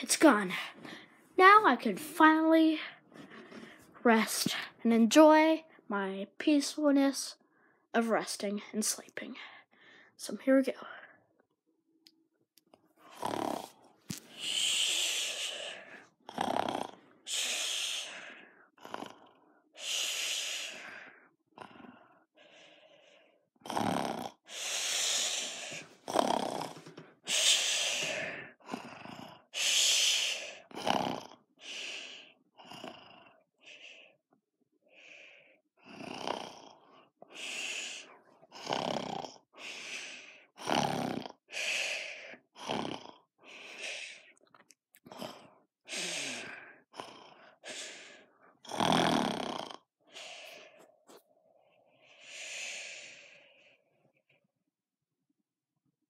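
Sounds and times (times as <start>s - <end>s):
person snoring: 13.0s - 22.2s, 23.6s - 34.0s, 35.8s - 44.3s, 45.0s - 53.5s.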